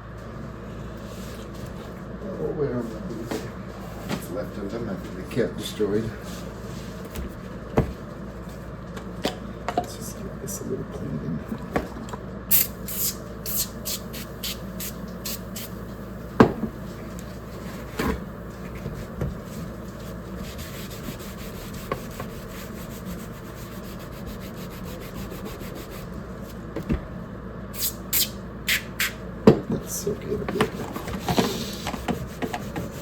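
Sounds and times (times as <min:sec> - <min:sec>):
hissy rubbing strokes: 0:19.9 - 0:26.1.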